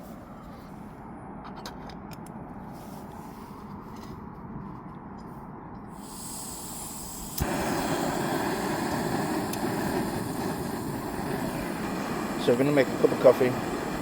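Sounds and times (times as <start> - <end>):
gas burner hissing: 5.9 - 14.0
stove igniter click: 7.2 - 10.5.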